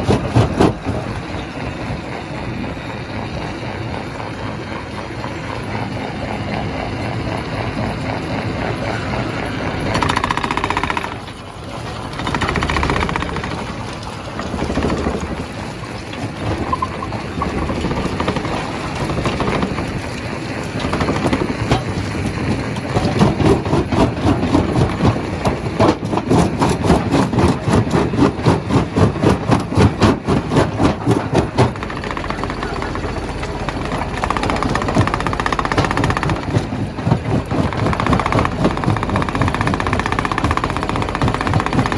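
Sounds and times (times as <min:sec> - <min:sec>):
rock crusher grinding stone: 0:00.0 - 0:02.4, 0:07.4 - 0:41.9
fast even pounding: 0:20.8 - 0:41.9.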